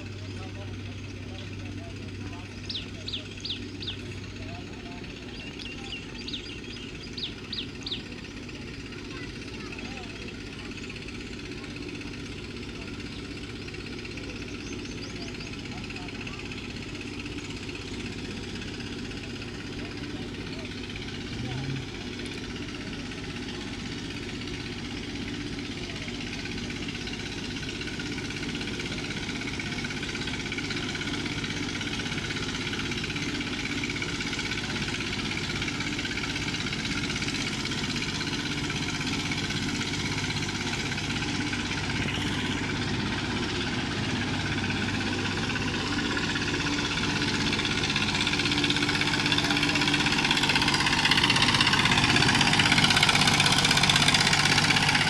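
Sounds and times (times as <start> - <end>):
construction machine engine running: 0.0 - 55.0.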